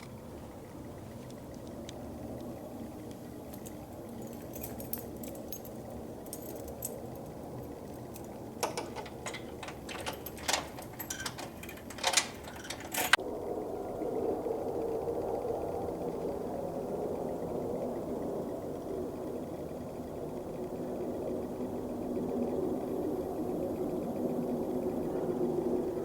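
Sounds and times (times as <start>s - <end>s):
sharp clicks and rattles: 3.1s - 13.2s.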